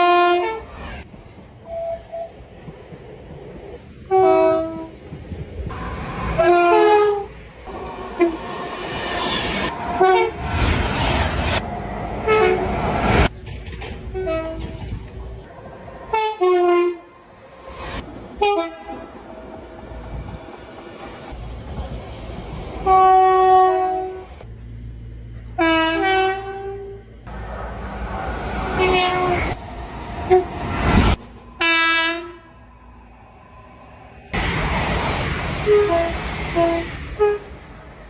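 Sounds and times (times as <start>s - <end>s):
passing train rumble: 0.0s - 38.0s
train air horn blasts: 4.1s - 4.9s, 6.2s - 8.4s, 9.6s - 10.8s, 12.2s - 13.3s, 14.2s - 14.8s, 16.1s - 17.1s, 22.9s - 24.3s, 25.5s - 27.0s, 28.6s - 29.6s, 31.6s - 32.5s, 35.6s - 37.5s.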